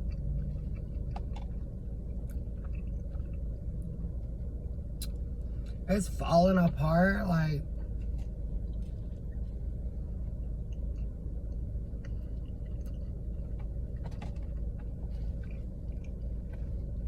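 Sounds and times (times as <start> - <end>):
chewing and biting food: 0.0 - 4.4, 10.2 - 17.0
steady low hum: 0.0 - 17.0.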